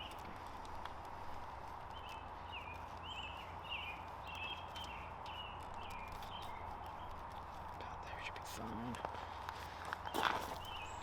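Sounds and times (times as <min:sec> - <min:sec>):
small bird chirping: 0:00.0 - 0:00.3, 0:01.8 - 0:08.4, 0:10.0 - 0:11.0
background hum and rumble: 0:00.0 - 0:11.0.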